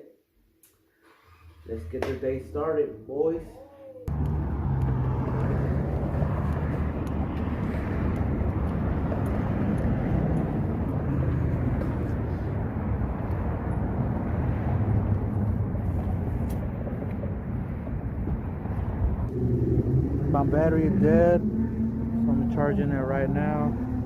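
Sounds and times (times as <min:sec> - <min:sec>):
low engine hum: 0:04.1 - 0:24.0
road or wind noise: 0:04.1 - 0:24.0.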